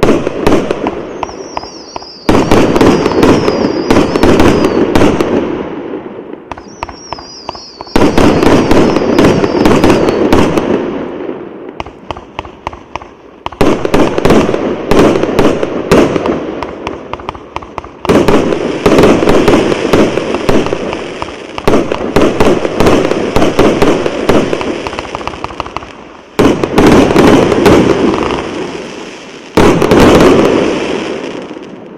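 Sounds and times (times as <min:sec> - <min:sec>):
fireworks launches and crackling bursts: 0:00.0 - 0:31.9
wavering high whistle: 0:01.2 - 0:02.3, 0:06.6 - 0:08.1, 0:08.9 - 0:10.3.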